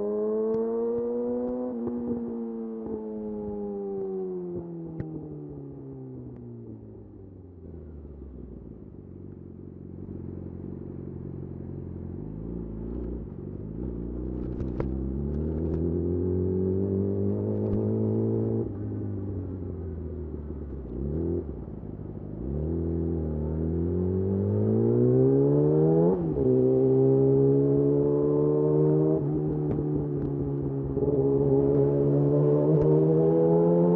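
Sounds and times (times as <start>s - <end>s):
motorcycle engine accelerating: 9.1s - 33.9s.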